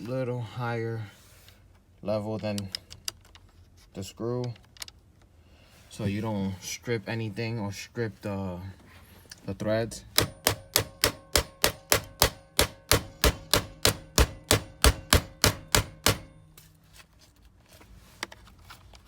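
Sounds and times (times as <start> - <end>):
hammer tapping on metal bolt: 10.1 - 16.6.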